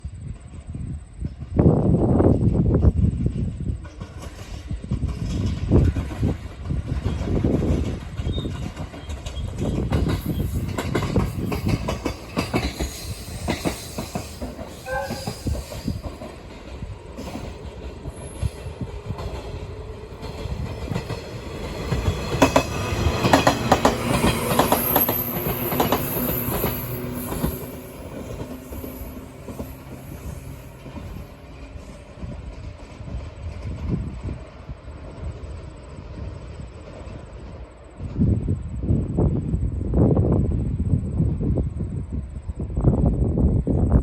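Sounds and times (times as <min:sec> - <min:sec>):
train wheels clattering over joints: 0:02.3 - 0:34.2
train wheel squeal: 0:06.9 - 0:16.4, 0:22.0 - 0:34.4.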